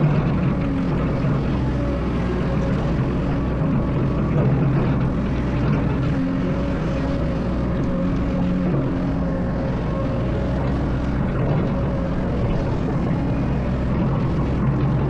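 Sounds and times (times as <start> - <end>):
excavator diesel engine drone: 0.0 - 15.0.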